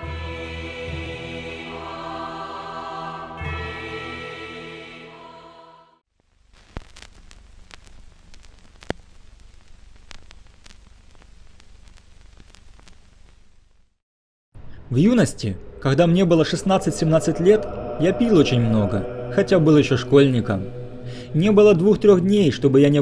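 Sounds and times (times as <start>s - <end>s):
choir-like music with held voices: 0.0s - 6.0s, 15.7s - 23.0s
low hiss: 6.2s - 14.0s
campfire crackling and popping: 6.4s - 13.9s.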